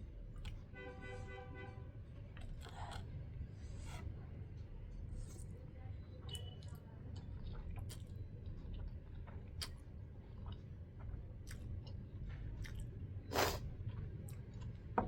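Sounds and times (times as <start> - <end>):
person chewing and biting food: 6.4 - 15.0.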